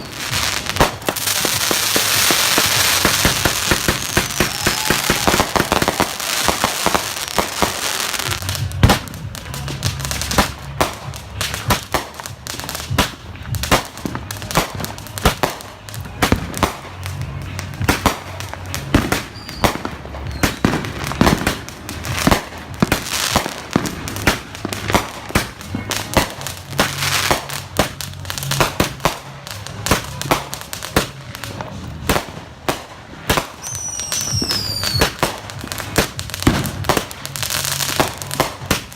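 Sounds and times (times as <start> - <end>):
fireworks bangs and crackles: 0.0 - 38.9.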